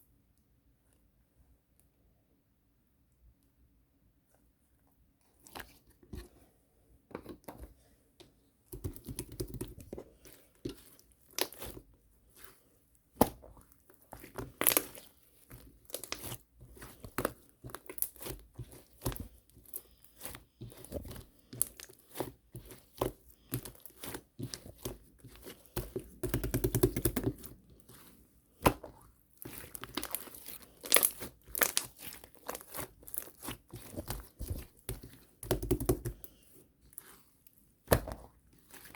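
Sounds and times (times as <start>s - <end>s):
slime squishing with sticky pops: 8.7s - 38.9s.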